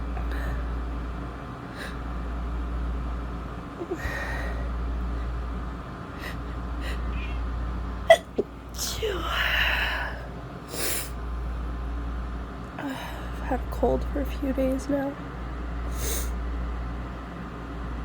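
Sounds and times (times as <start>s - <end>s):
woman sniffling: 6.2s - 7.4s, 10.7s - 11.2s, 15.9s - 16.4s.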